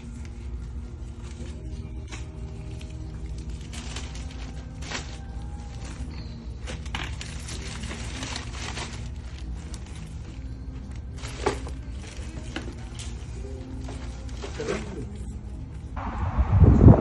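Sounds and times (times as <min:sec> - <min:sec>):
low hum: 0:15.1 - 0:17.0.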